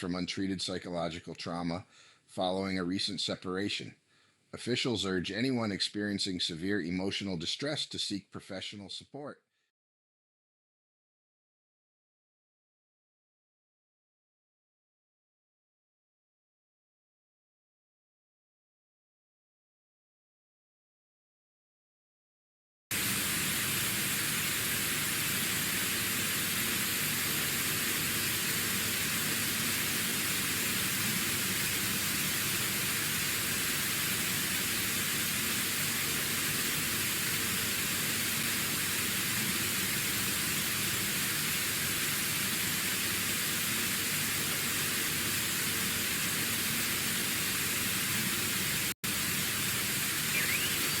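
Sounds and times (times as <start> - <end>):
static hiss: 22.9 - 51.0.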